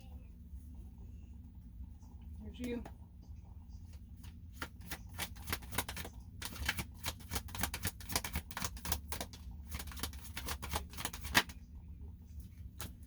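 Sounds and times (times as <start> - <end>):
low steady hum: 0.0 - 13.0
cards being shuffled: 4.2 - 11.6, 12.7 - 13.0.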